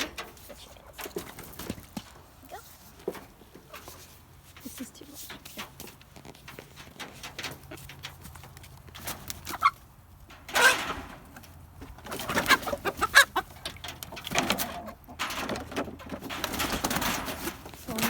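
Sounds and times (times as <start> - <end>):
chickens clucking and squawking: 6.7 - 18.0.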